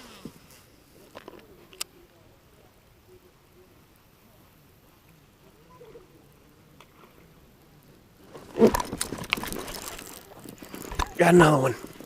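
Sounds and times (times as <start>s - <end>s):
splashing with knocks and rattles: 8.2s - 12.0s.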